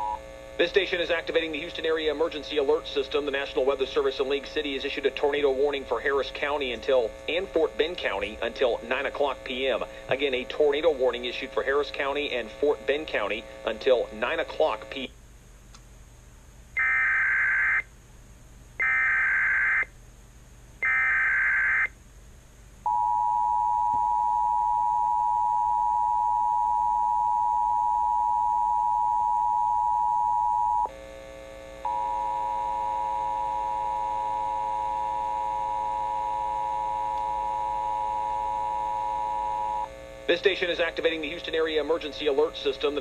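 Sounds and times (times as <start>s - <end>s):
two-tone attention signal: 31.9s - 39.9s.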